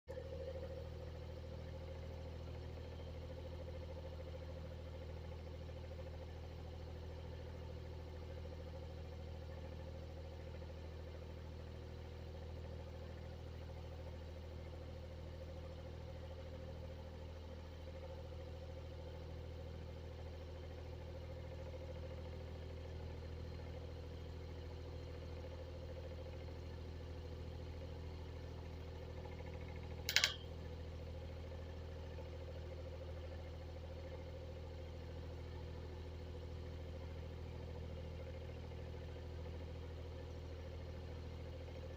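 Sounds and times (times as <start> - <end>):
sharp click: 30.1 - 30.4.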